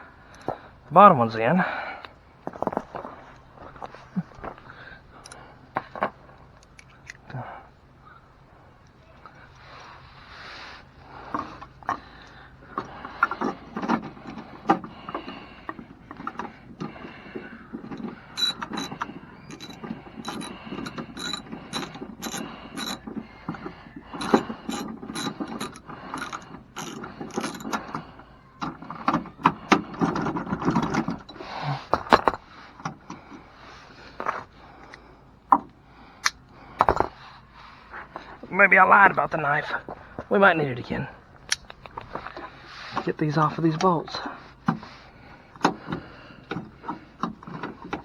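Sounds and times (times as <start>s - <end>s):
metallic knocks and handling: 15.7s - 28.1s
ratchet wrench clicking: 18.0s - 23.1s, 24.2s - 27.9s.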